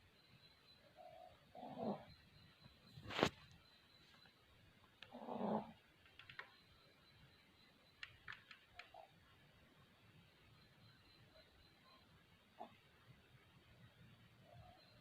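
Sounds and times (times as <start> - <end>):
puppy snoring: 1.5 - 2.2, 5.1 - 5.8.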